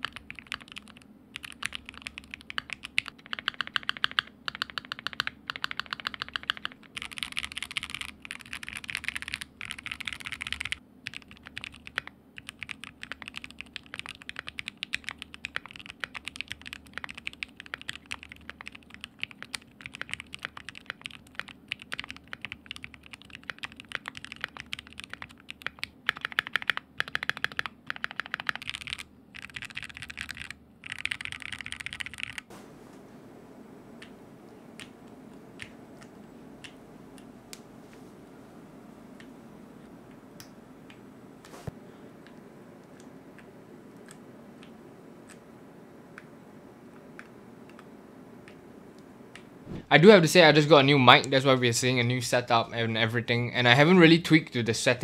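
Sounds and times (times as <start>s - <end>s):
mechanical keyboard typing: 0.0s - 32.5s.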